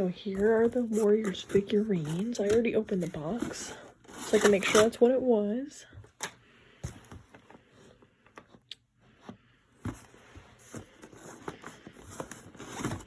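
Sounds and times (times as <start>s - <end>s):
packaging rustling: 9.9s - 13.0s.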